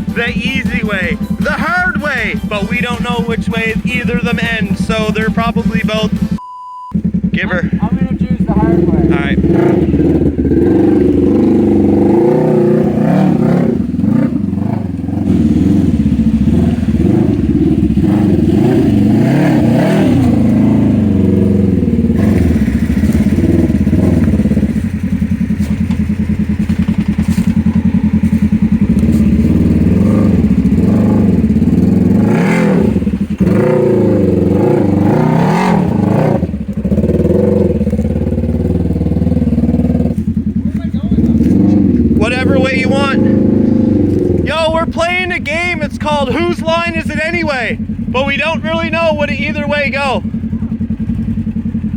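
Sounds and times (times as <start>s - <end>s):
vehicle engine revving under load: 0.0s - 51.9s
knocks and clatters: 22.7s - 29.9s.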